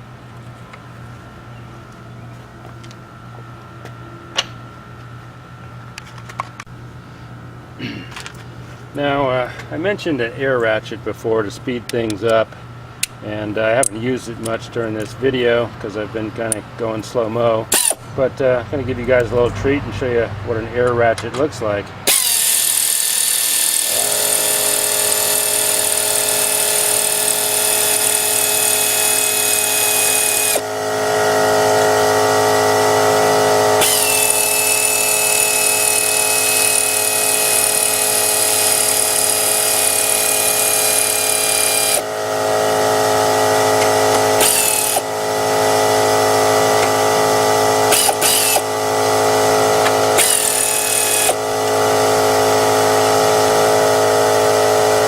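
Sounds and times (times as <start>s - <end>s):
steady motor hum: 0.0s - 55.0s
pneumatic air ratchet: 17.7s - 18.0s, 22.0s - 55.0s
exhaust air hissing: 22.0s - 55.0s.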